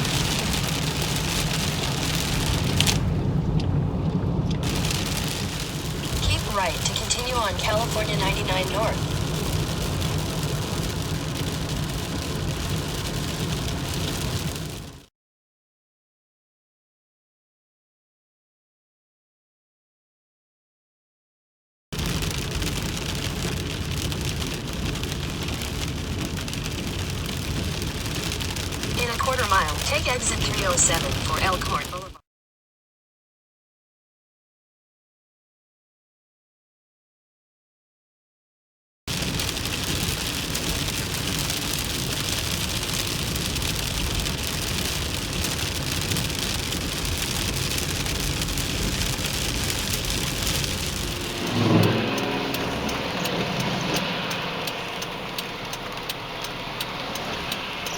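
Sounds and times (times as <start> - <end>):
road and engine rumble: 0.0 - 15.0, 22.0 - 32.2, 39.1 - 57.9
rain pelting a car: 0.0 - 15.1, 22.0 - 32.2, 39.1 - 57.9.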